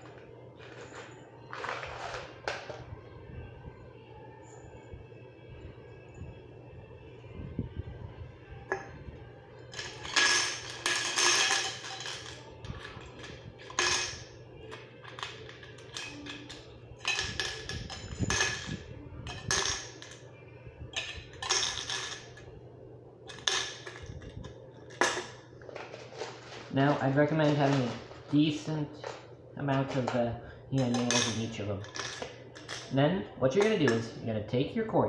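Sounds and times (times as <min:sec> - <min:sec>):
nails clinking into metal cans: 0:00.0 - 0:02.8, 0:09.6 - 0:20.2, 0:20.9 - 0:22.5, 0:23.3 - 0:30.2, 0:30.8 - 0:34.2.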